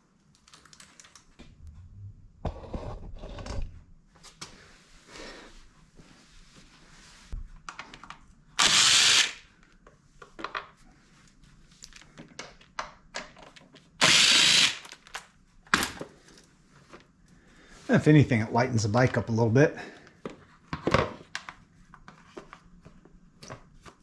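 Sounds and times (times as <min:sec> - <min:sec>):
cordless power driver spinning: 0:08.6 - 0:09.4, 0:14.0 - 0:14.8.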